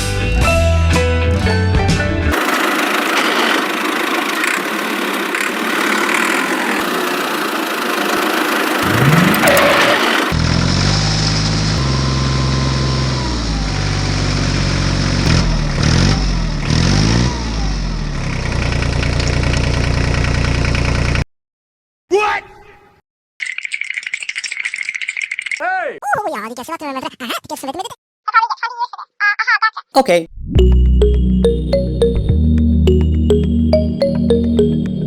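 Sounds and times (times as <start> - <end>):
engine running and revving: 2.3 - 21.2.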